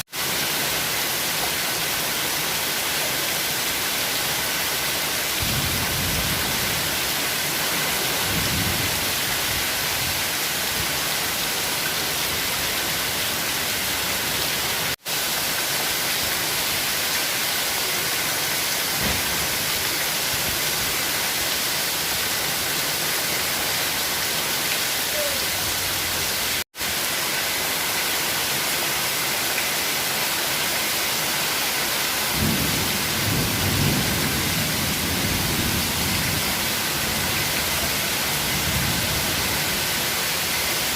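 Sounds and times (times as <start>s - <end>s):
heavy rain pouring: 0.0s - 40.9s
low rumble of thunder: 5.4s - 6.9s.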